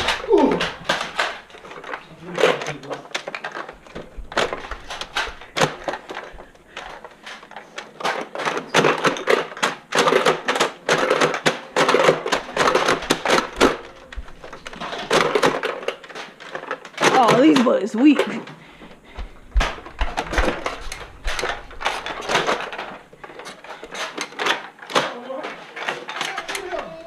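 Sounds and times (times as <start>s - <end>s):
rapid clicking and knocking: 0.0s - 18.4s.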